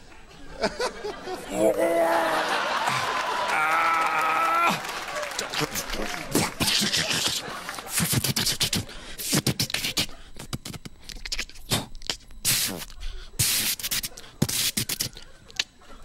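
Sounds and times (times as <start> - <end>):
man making mouth sound effects: 6.3 - 15.7.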